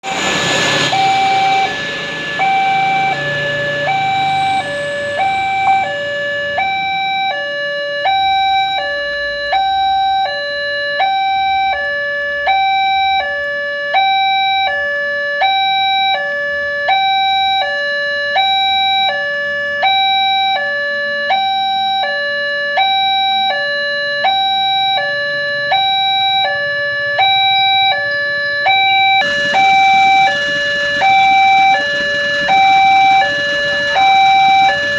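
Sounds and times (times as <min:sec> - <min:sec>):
railroad crossing two-tone alarm: 0:00.0 - 0:34.9.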